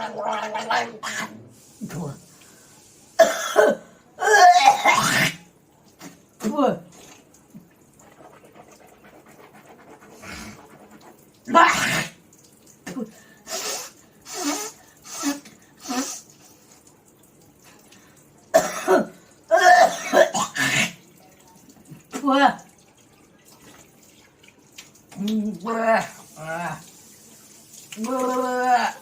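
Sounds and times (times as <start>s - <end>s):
person clearing throat: 3.2s - 5.4s, 18.5s - 21.0s.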